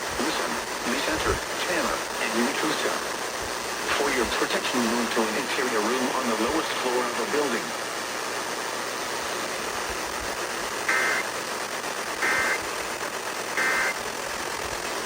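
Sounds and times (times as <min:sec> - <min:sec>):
radio hiss: 0:00.0 - 0:15.0
digital data tone bursts: 0:10.9 - 0:12.6, 0:13.3 - 0:14.2.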